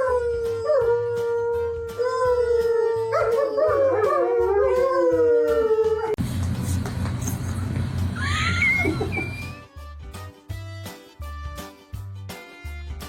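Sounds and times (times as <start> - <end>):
dog howling: 0.0 - 6.2
background music with steady beat: 6.2 - 13.0.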